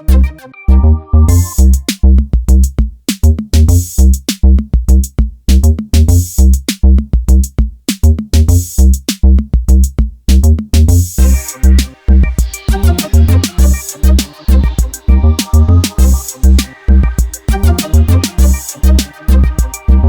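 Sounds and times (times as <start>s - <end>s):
upbeat electronic music: 0.0s - 2.1s, 11.2s - 20.0s.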